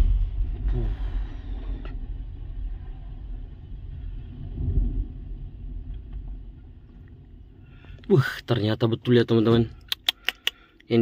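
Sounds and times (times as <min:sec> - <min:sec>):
low rumble of mine blast: 0:00.0 - 0:07.6.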